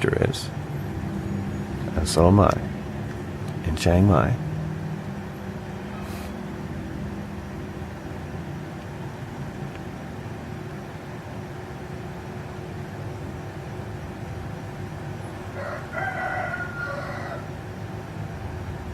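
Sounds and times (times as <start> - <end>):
rooster crowing: 15.4 - 17.7.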